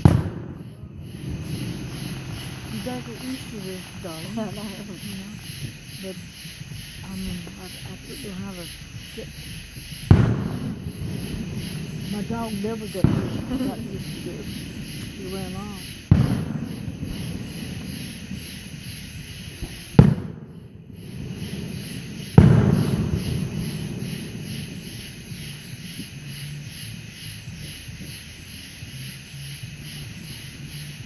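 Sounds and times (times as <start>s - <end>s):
distant fireworks: 0.0s - 31.0s
firework rumble: 0.0s - 31.0s
sharp firework bangs: 0.0s - 31.0s.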